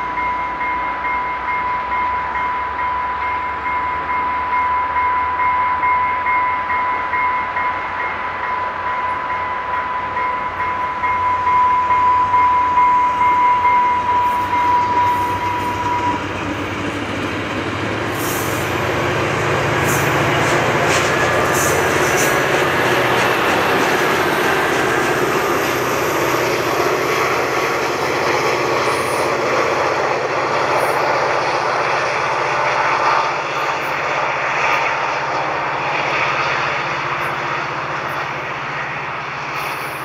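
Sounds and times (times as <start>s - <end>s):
high-pitched tone: 0.0s - 16.8s
train rumbling past: 0.0s - 40.0s.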